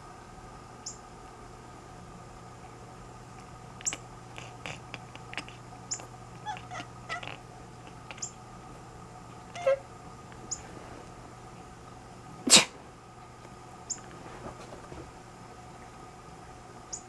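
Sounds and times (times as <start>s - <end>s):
cat making soft vocal sounds: 3.8s - 5.6s, 6.4s - 8.2s, 9.6s - 9.8s.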